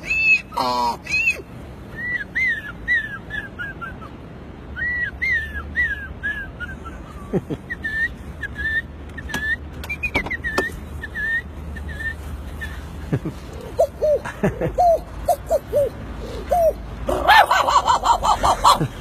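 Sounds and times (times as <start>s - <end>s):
man whistling birdsong chirps: 4.7s - 6.9s, 7.7s - 12.2s.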